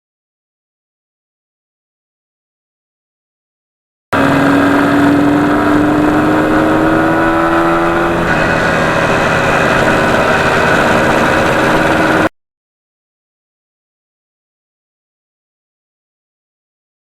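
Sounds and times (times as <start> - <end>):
two-stroke motorcycle engine: 4.2 - 12.3.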